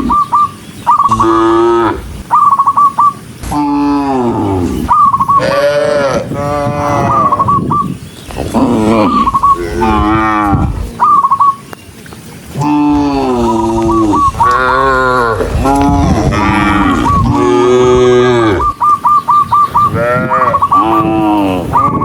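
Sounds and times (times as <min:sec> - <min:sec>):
cows mooing: 0:01.1 - 0:02.2, 0:03.4 - 0:07.5, 0:08.3 - 0:11.1, 0:12.5 - 0:18.8, 0:19.9 - 0:21.9.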